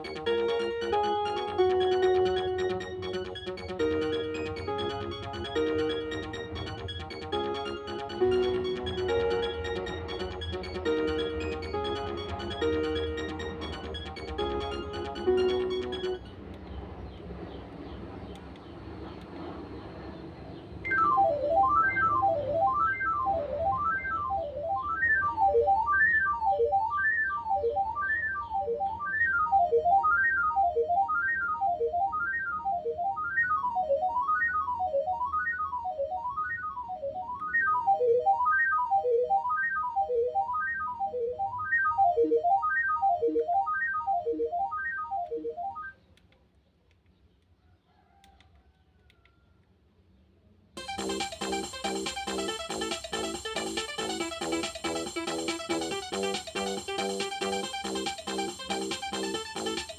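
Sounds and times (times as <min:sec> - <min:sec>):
monophonic phone ringtone beeps: 0:00.0 - 0:16.4, 0:20.9 - 0:46.0.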